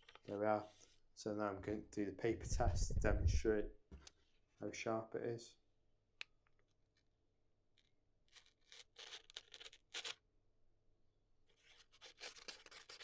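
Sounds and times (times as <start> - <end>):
chisel cutting paper: 11.9 - 13.0.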